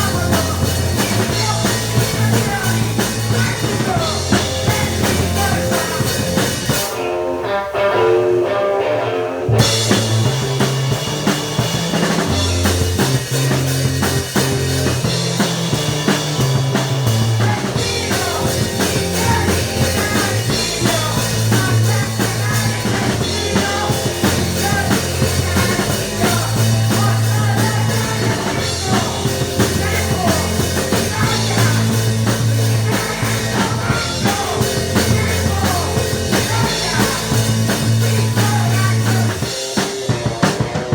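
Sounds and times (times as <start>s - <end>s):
heavy bass line: 0.0s - 7.1s, 9.4s - 40.3s
rock band playing live: 0.0s - 40.9s.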